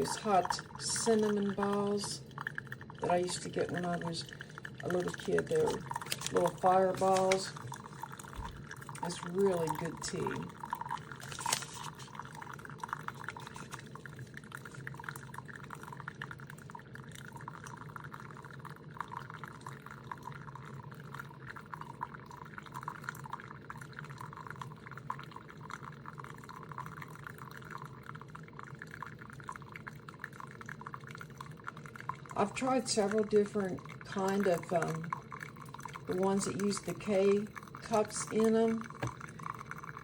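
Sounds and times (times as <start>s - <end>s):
coffee maker dispensing: 0.0s - 2.2s, 3.0s - 13.9s, 32.4s - 40.0s
tea trickling into a cup: 0.0s - 40.0s.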